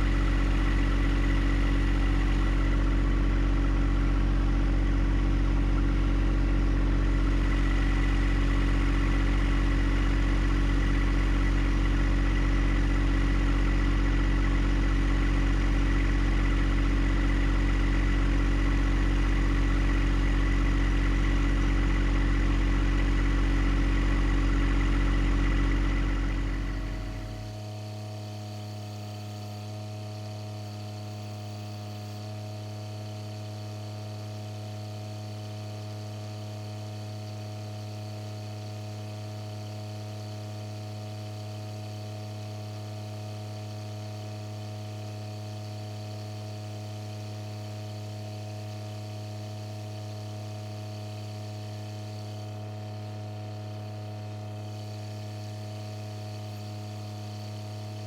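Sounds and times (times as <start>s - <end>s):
tractor diesel engine running: 15.2s - 28.2s.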